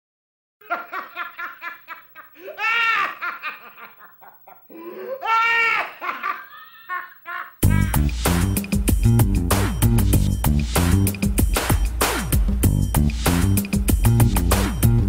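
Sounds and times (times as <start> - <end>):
person laughing heartily: 0.6 - 8.3.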